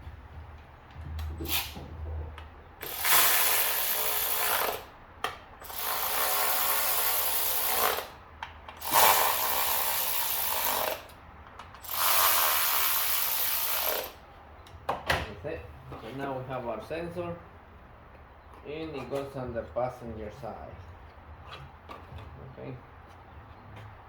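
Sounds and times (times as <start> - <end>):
power tool driving bolts: 1.2 - 1.8, 2.8 - 14.2.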